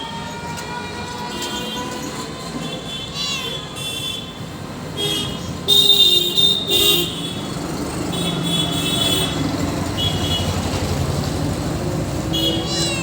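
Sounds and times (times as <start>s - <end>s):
vehicle horns honking: 0.0s - 10.8s, 12.2s - 13.0s
street traffic noise: 0.0s - 13.0s.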